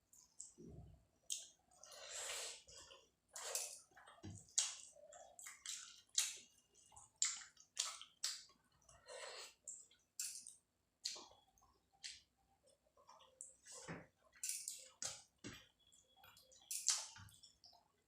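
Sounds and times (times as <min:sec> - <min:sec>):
wet mouth eating noises: 0:03.4 - 0:08.5.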